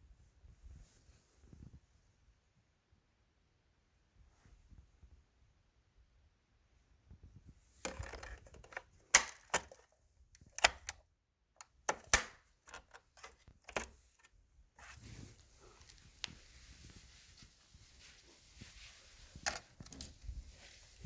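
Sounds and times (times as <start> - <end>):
sharp clicks and knocks: 7.9 - 11.0, 11.6 - 14.2.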